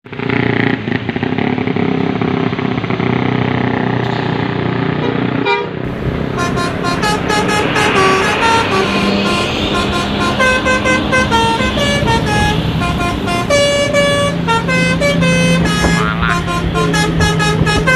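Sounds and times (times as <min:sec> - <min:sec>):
bus engine running: 0:00.0 - 0:17.9
bus musical air horns: 0:05.0 - 0:17.9.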